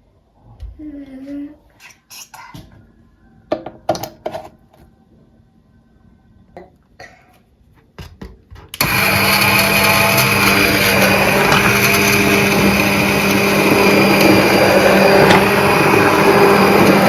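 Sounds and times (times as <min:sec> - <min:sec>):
electric motor running: 0:08.8 - 0:17.0.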